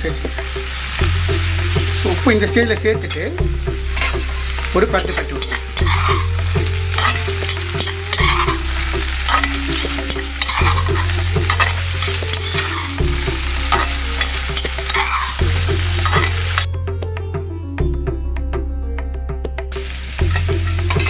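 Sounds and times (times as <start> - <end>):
potatoes sizzling in oil: 0.0 - 16.7, 19.8 - 21.0
spatula scraping a pan: 3.9 - 16.7, 20.2 - 21.0.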